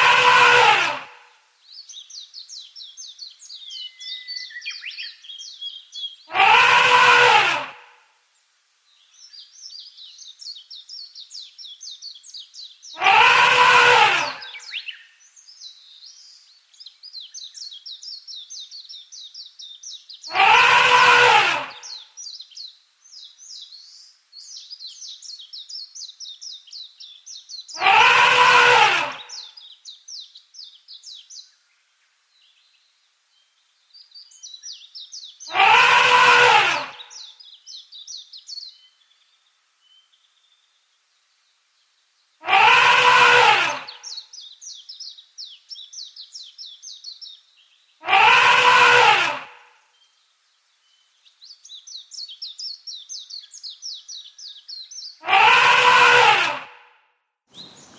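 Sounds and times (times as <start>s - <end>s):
elephant trumpeting: 0.0s - 1.2s, 6.3s - 7.9s, 13.0s - 14.6s, 20.3s - 21.9s, 27.8s - 29.4s, 35.5s - 37.0s, 42.4s - 44.0s, 48.0s - 49.7s, 55.2s - 56.8s.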